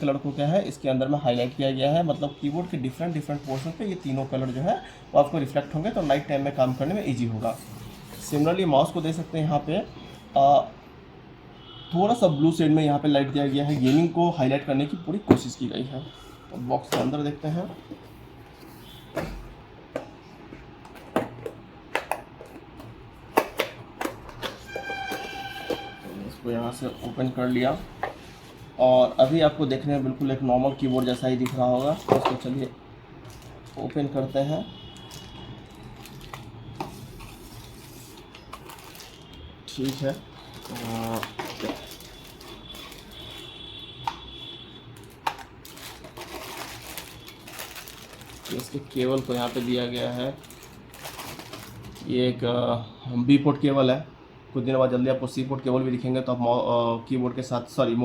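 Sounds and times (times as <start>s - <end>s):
keyboard packaging handling: 22.2s - 34.3s, 34.9s - 44.2s, 44.9s - 52.1s.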